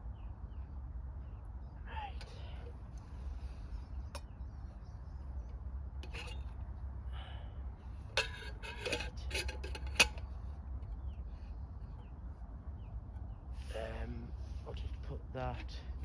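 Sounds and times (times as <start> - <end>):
scraping and clattering: 6.0 - 6.7, 8.1 - 10.5.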